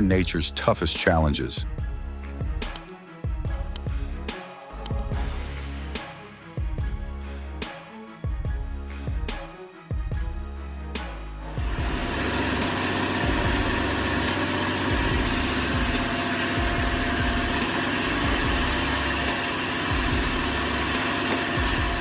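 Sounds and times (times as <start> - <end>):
heavy machine engine humming: 11.6 - 22.0.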